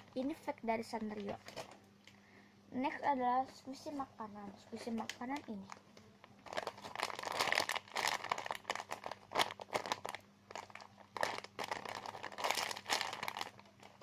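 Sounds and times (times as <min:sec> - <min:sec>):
squishy toy crinkling and crunching: 0:04.8 - 0:14.0.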